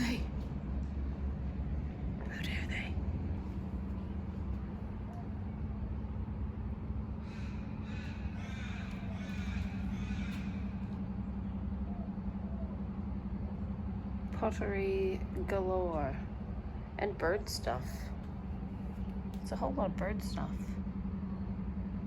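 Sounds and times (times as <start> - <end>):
steady low hum: 0.0 - 22.0
crow cawing: 7.2 - 11.0.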